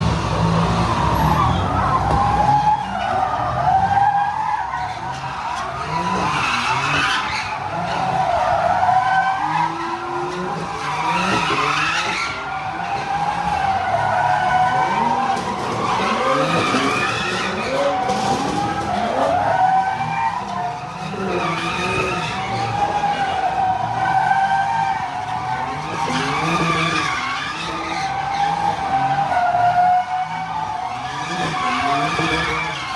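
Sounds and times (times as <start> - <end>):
engine revving: 0.0 - 2.6
tyres squealing: 1.1 - 32.9.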